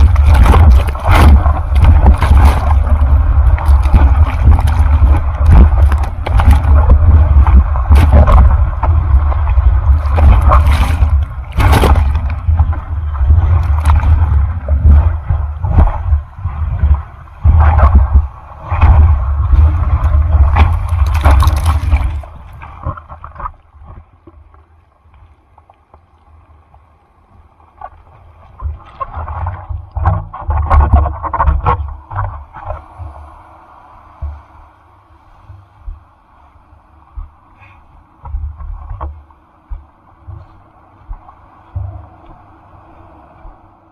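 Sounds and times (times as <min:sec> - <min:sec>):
wind buffeting microphone: 0:00.0 - 0:24.2
surf water rushing and splashing: 0:00.0 - 0:43.9.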